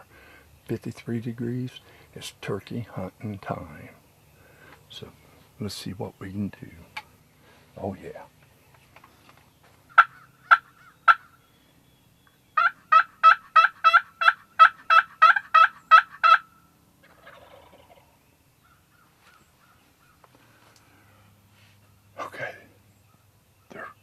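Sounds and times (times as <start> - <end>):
turkey yelping: 9.8 - 11.4, 12.6 - 20.2.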